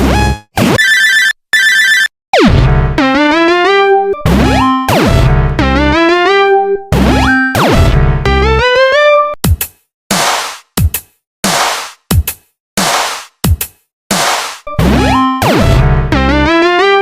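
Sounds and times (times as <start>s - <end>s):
synthesizer music: 2.4s - 9.3s, 14.7s - 17.0s.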